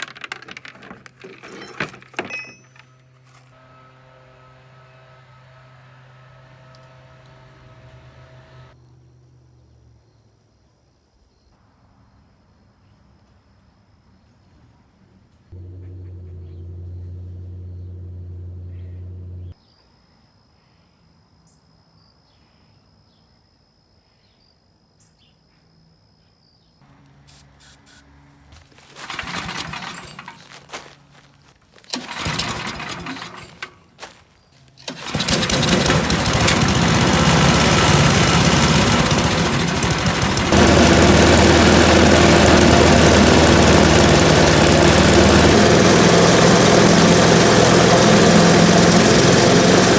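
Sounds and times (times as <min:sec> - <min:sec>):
small gasoline engine cranking: 0:00.0 - 0:03.5, 0:27.3 - 0:49.9
wood chipper engine running: 0:00.0 - 0:08.8, 0:15.6 - 0:19.5, 0:27.4 - 0:49.9
steady low hum: 0:15.6 - 0:19.6.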